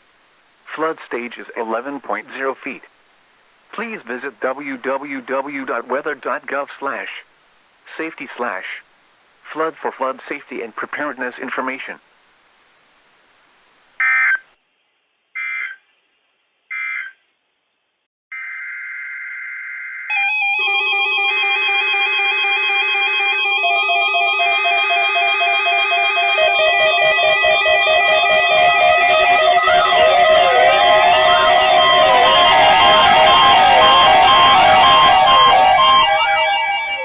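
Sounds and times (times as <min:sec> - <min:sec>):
steady tone: 0:20.5 - 0:37.0
guitar music: 0:21.2 - 0:37.0
digital data bursts: 0:22.9 - 0:37.0.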